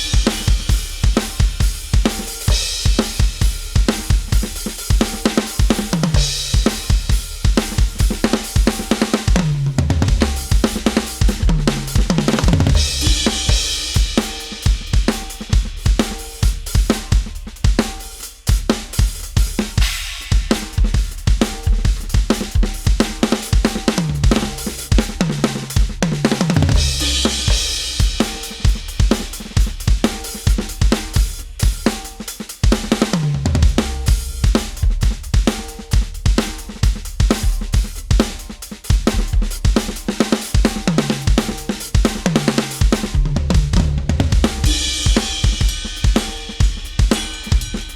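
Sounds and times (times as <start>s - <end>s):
snare and hi-hat: 0.0s - 47.9s
bass drum strokes: 9.3s - 16.0s, 24.0s - 30.0s, 33.2s - 36.1s, 43.0s - 47.9s
cymbal crashes: 44.5s - 47.9s.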